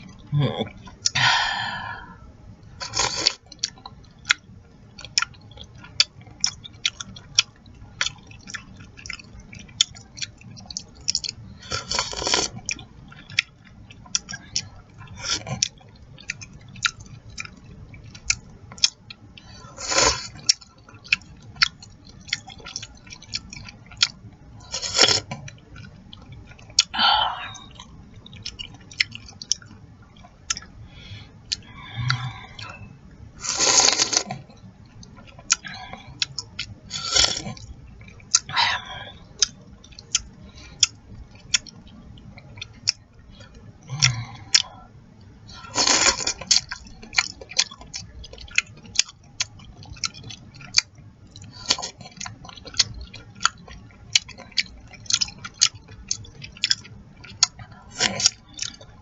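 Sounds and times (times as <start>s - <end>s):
slurping noodles: 2.8s - 3.4s, 11.7s - 12.6s, 19.7s - 20.4s, 33.4s - 34.4s, 45.7s - 46.5s
wet chewing and lip smacking: 2.8s - 59.0s.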